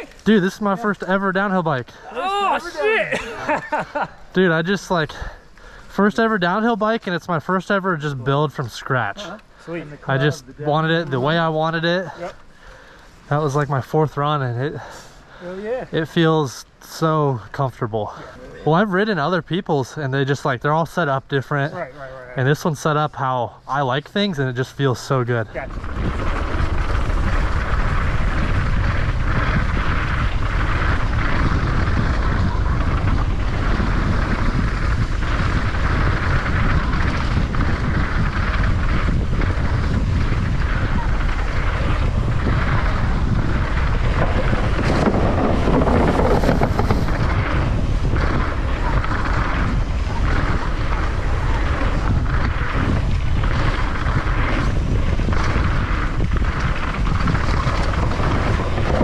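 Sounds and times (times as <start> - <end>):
mountain bike rumbling on trail: 0.0 - 2.0, 3.1 - 16.6, 17.2 - 59.0
wind rushing over microphone: 0.0 - 59.0
bike knocks and rattles: 25.8 - 59.0.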